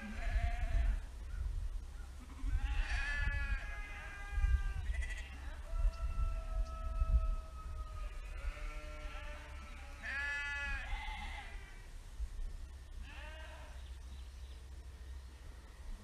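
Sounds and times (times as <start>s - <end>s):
sheep bleating: 0.0s - 1.0s, 2.2s - 5.4s, 8.1s - 11.9s, 13.0s - 13.8s.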